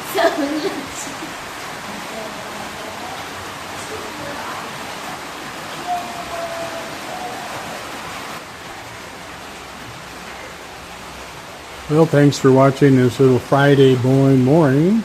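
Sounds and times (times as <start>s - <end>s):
pouring rain: 0.0s - 15.0s
faint drawn-out call: 5.7s - 8.1s.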